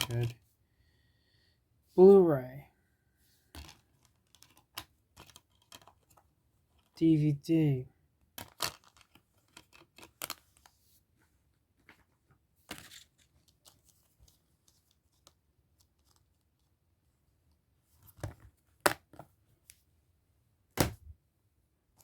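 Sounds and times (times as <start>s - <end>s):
plastic cases clicking and rustling: 3.5s - 7.0s, 8.3s - 10.7s.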